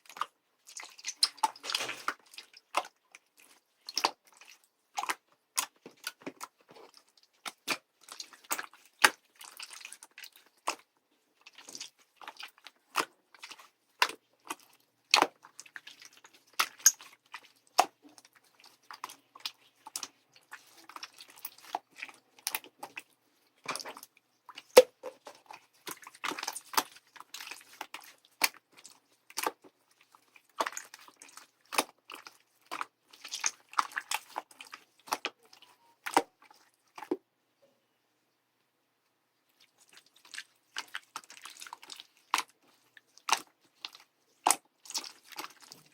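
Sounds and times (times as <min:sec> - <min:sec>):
soft crackle of slime: 0:00.0 - 0:24.7, 0:25.3 - 0:37.2, 0:39.4 - 0:45.9.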